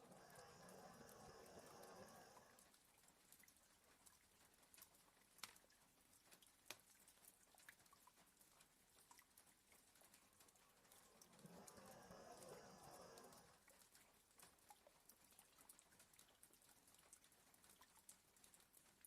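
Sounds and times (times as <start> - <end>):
dog breathing softly: 0.0 - 2.8, 10.4 - 14.0
raindrops tapping on a window: 0.0 - 19.0.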